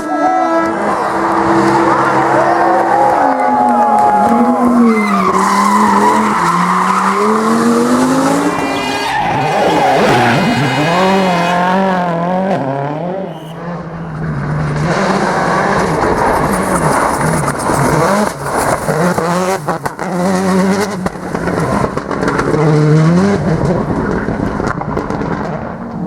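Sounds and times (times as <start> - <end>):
tyres squealing and skidding: 0.0 - 12.2, 13.1 - 20.2
rally car engine revving: 0.0 - 26.0.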